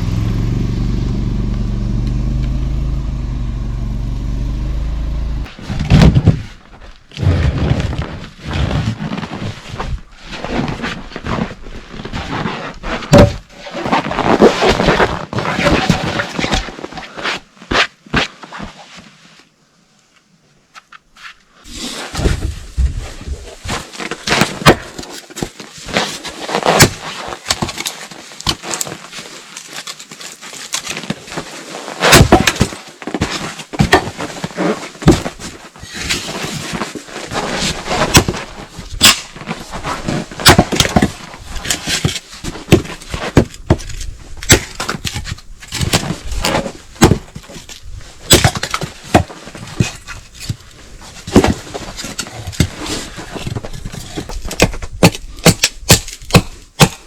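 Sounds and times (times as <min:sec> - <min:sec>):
wood cracking and knocking: 0:32.1 - 0:50.6, 0:51.3 - 0:57.0.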